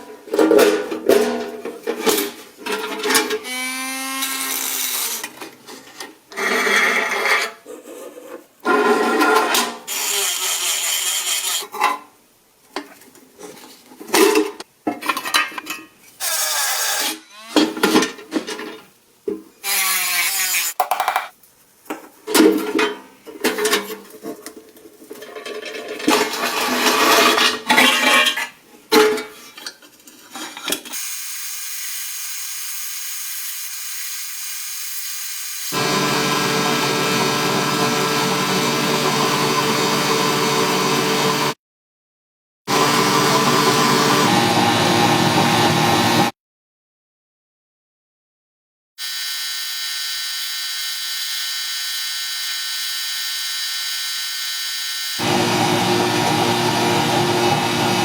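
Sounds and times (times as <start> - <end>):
high-pitched power tool whining: 31.0 - 38.5, 49.0 - 57.8.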